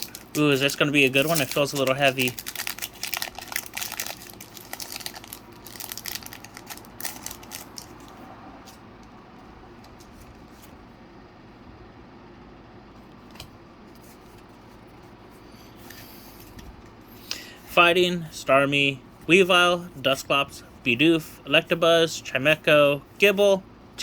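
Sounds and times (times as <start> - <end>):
faint handling sounds: 0.0 - 3.2, 6.0 - 10.9, 13.0 - 17.8
foil wrapper crinkling and tearing: 0.0 - 8.1.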